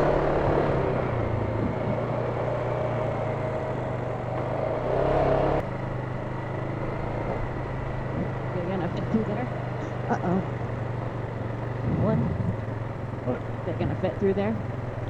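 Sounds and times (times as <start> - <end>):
atv engine running: 0.0 - 15.0.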